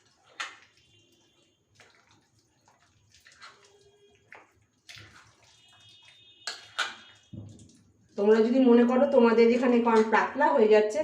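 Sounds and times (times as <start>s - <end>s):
chicken squelching in marinade: 0.0s - 8.4s.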